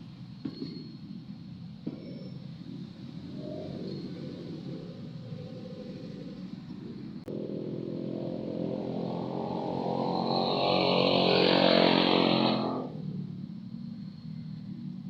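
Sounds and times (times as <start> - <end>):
small engine passing by: 3.3 - 15.0.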